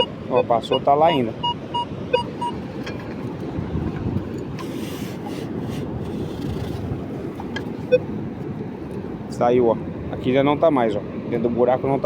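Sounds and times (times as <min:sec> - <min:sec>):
metal detector beep: 0:00.0 - 0:02.6
wind noise: 0:01.2 - 0:09.0
search coil rustling over sand: 0:04.2 - 0:07.4.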